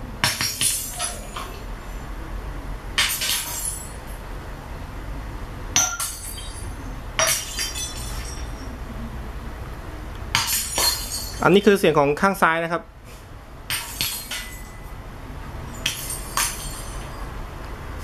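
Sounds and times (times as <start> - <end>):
glass shattering: 0.2 - 1.5, 3.0 - 4.0, 5.8 - 8.7, 10.3 - 11.5, 13.7 - 14.9, 15.7 - 17.2.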